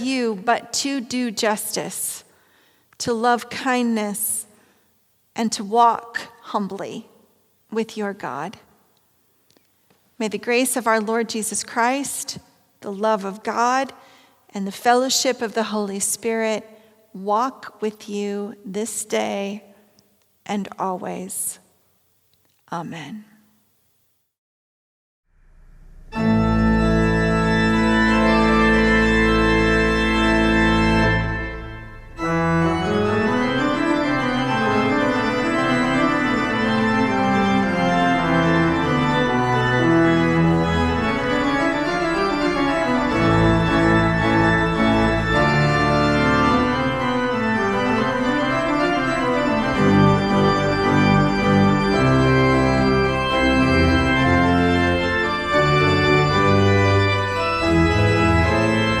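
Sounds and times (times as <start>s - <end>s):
organ playing chords: 25.4s - 59.0s.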